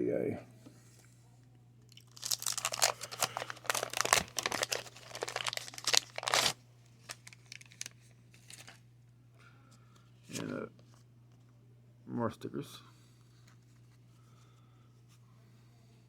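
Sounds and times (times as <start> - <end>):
wrapper tearing and crinkling: 1.9 - 8.8.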